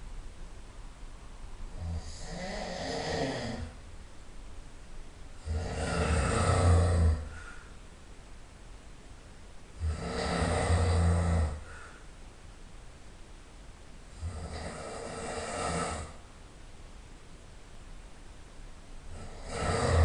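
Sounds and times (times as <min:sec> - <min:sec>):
person snoring loudly: 0:01.7 - 0:03.8, 0:05.4 - 0:07.5, 0:09.8 - 0:11.8, 0:14.2 - 0:16.2, 0:19.1 - 0:20.0.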